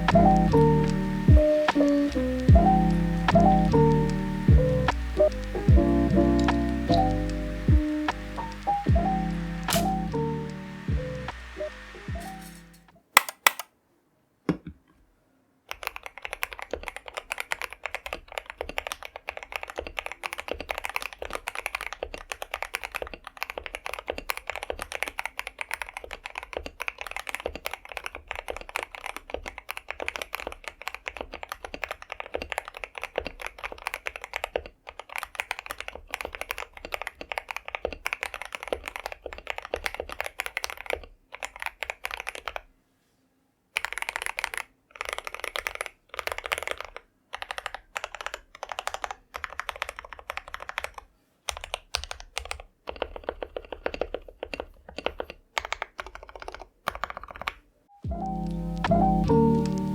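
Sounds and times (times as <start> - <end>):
fast typing on mechanical keyboard: 15.7 - 42.7, 43.8 - 57.6.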